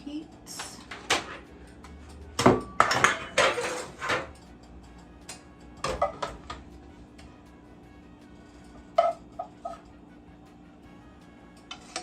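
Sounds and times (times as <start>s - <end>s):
metal cooking pot clanking: 0.6s - 4.4s, 5.8s - 6.6s, 8.9s - 9.8s.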